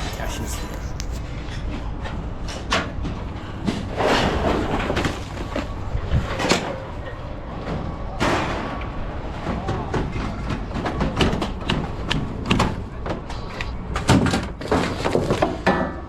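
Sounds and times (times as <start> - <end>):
steady low rumble: 0.0 - 8.2.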